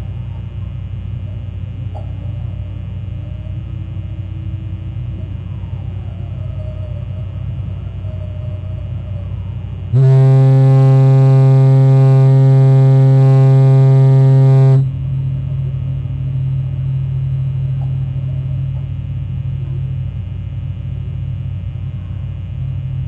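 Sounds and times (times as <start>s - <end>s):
foghorn blast: 9.9s - 15.2s.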